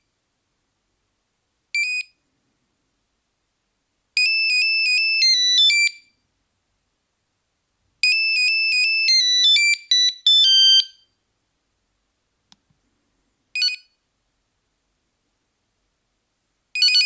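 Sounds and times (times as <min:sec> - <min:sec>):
click: 0:12.5 - 0:12.8.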